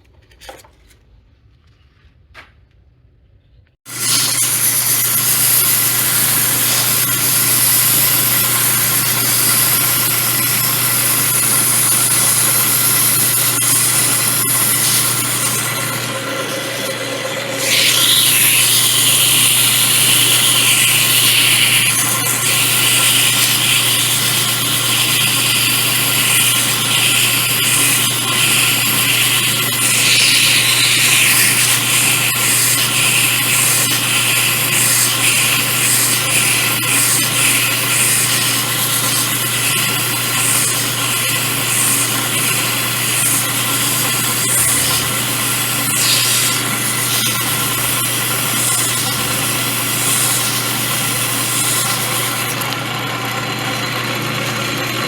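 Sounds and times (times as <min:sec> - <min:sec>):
lathe motor humming: 0:03.9 - 0:55.0
scratchy scouring on metal: 0:17.6 - 0:52.5.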